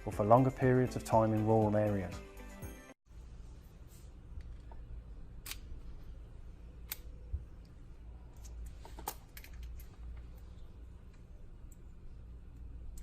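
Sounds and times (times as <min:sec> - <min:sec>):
low steady hum: 0:03.1 - 0:13.0.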